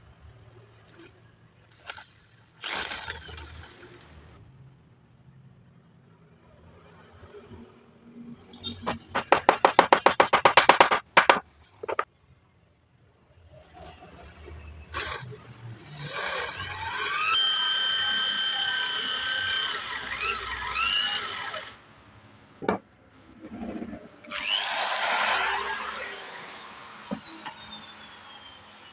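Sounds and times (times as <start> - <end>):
electric drill motor whining: 16.0 - 21.8, 24.3 - 28.9.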